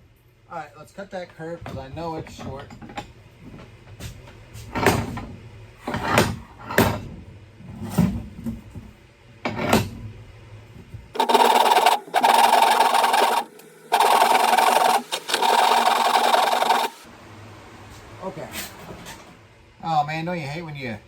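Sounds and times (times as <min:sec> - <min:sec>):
saw cutting wood: 0:11.2 - 0:17.1.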